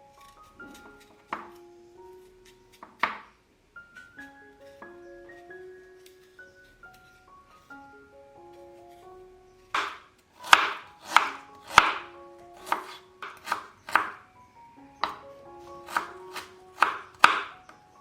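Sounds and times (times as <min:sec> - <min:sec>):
soft background music: 0:00.0 - 0:18.0
knife chopping on cutting board: 0:09.8 - 0:14.2, 0:15.8 - 0:17.5.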